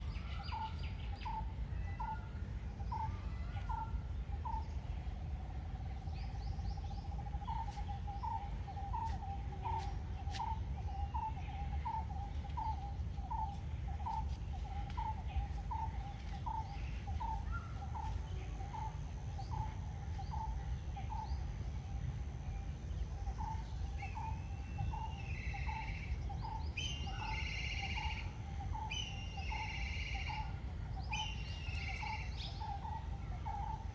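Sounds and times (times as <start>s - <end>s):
high birds chirping: 0.0s - 21.7s, 22.9s - 33.9s
low background rumble: 0.0s - 33.9s.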